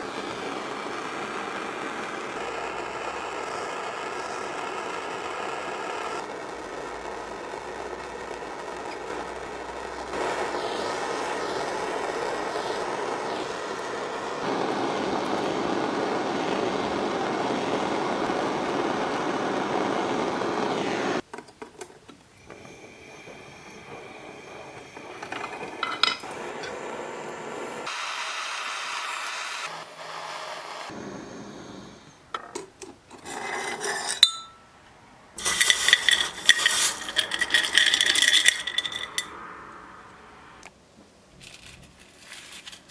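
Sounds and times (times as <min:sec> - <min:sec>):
rasping rub on silver: 0:35.4 - 0:39.0
metal chain links clinking: 0:35.4 - 0:39.3.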